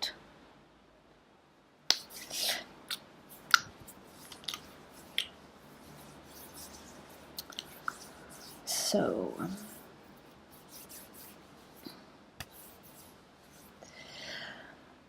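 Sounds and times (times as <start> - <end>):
wet mouth clicks and smacks: 1.9 - 5.4, 7.4 - 8.0.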